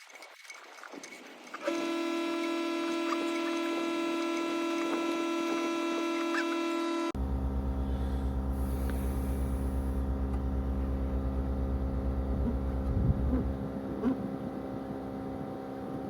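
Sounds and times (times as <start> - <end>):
engine running low rumble: 7.2 - 16.0.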